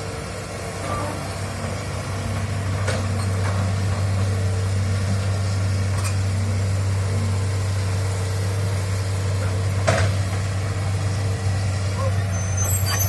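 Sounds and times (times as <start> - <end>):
diesel engine droning: 0.0 - 13.0.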